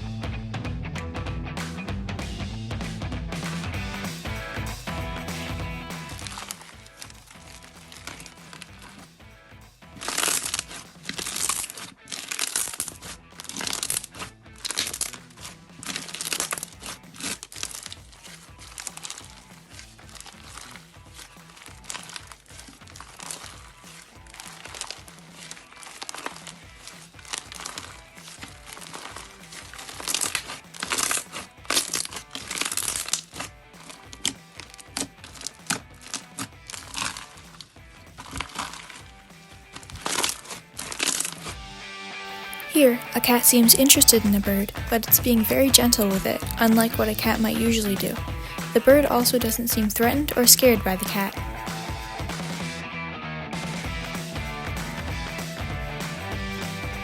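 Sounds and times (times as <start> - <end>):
faint music: 3.0 - 57.0
crisp crunching and crinkling: 6.2 - 9.0, 9.9 - 41.6.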